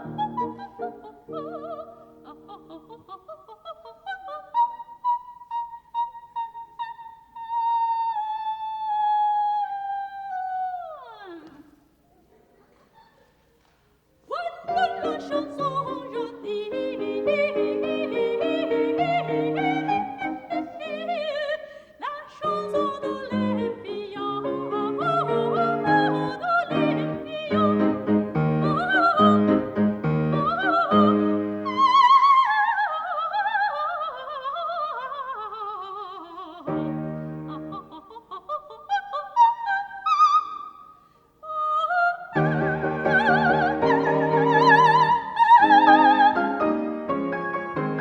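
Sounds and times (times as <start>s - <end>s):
soprano singing opera: 0.0s - 11.8s, 14.2s - 46.9s
piano chords: 14.7s - 21.5s, 22.4s - 32.4s, 42.4s - 48.0s.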